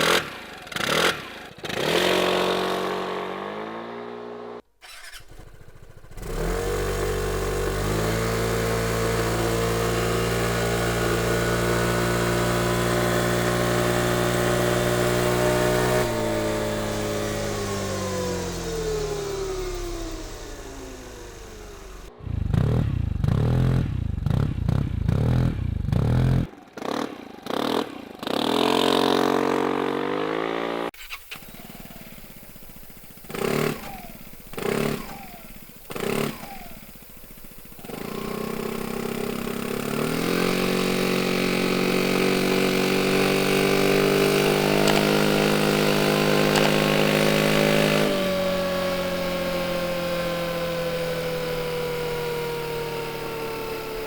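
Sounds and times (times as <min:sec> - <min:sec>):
scooter engine revving: 0:00.0 - 0:54.0.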